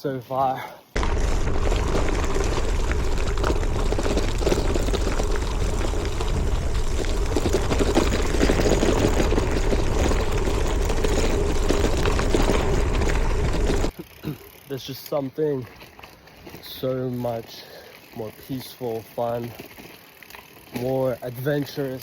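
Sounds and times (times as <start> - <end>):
bike tyres on gravel: 0.1 - 22.0
wind on microphone: 1.0 - 13.9.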